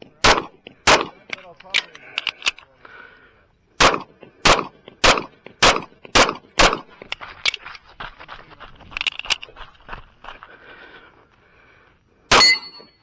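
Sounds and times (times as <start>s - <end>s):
pistol shots: 0.2s - 1.3s, 3.8s - 6.9s, 12.3s - 12.9s.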